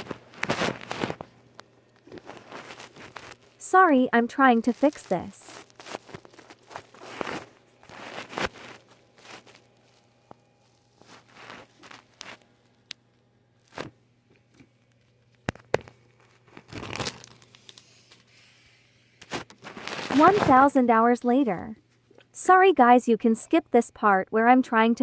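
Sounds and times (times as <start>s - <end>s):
rustling and crinkling: 0.0s - 3.6s, 4.2s - 13.0s, 13.6s - 18.5s, 19.2s - 20.8s.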